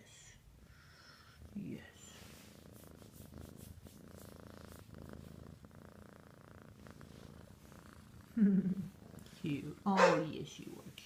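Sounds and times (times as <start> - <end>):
kitten purring: 0.2 - 11.0
person speaking: 9.4 - 11.0.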